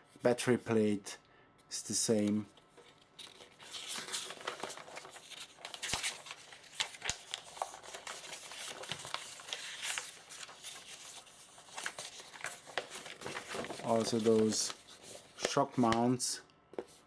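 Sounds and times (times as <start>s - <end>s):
packaging crinkling and rustling: 2.7s - 16.1s.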